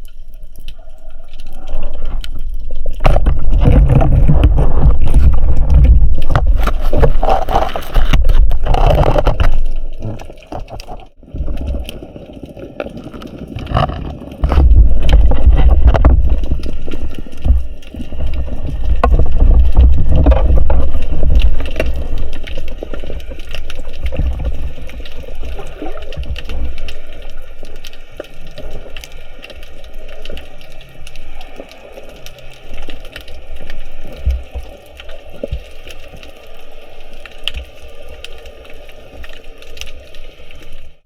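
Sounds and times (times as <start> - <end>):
water rushing over microphone: 0.0 - 41.0.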